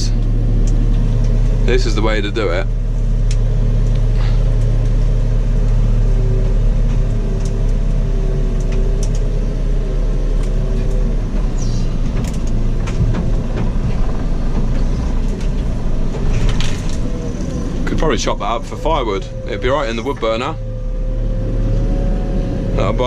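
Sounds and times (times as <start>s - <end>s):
diesel engine under load: 0.0s - 23.0s
steady whine: 0.0s - 23.0s
sharp clicks and cracks: 8.5s - 9.3s, 12.0s - 17.5s.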